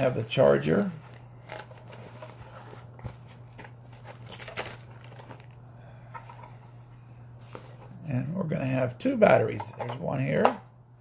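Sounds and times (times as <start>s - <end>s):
packaging crinkling and rustling: 0.0s - 5.6s.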